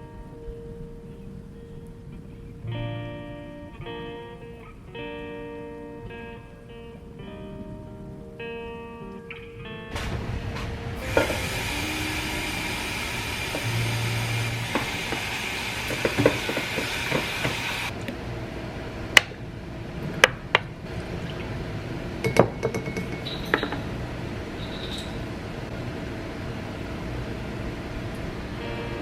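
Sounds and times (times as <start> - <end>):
steady rushing hiss: 9.9 - 19.0
dishes and utensils clinking: 22.2 - 23.9.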